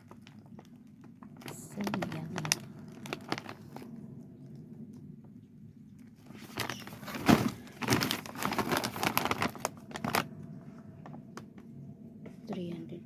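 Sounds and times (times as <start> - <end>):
plastic snack packet crinkling: 0.0 - 3.9, 6.3 - 10.4.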